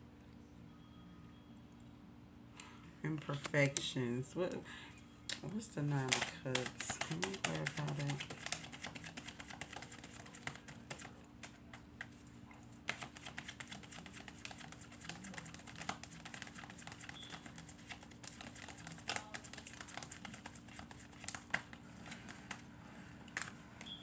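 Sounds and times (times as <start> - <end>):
cards being shuffled: 5.3 - 12.2, 12.8 - 24.0.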